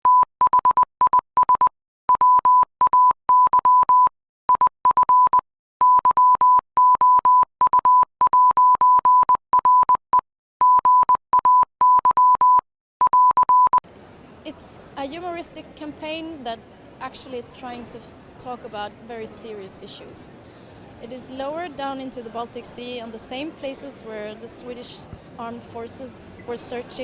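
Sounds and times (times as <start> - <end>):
morse code beeps: 0.0 - 13.8.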